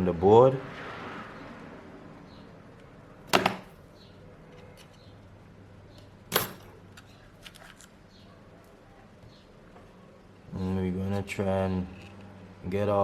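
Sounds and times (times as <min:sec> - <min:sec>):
sharp knocks: 0:03.3 - 0:03.8.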